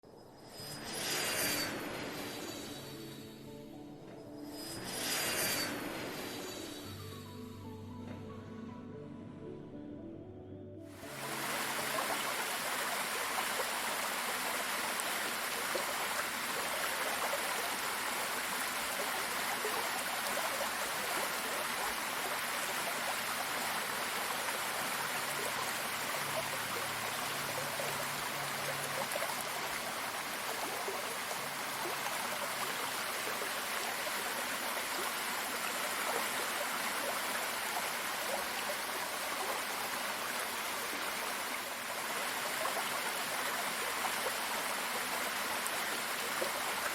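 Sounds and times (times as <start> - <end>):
water rushing: 11.0 - 46.9.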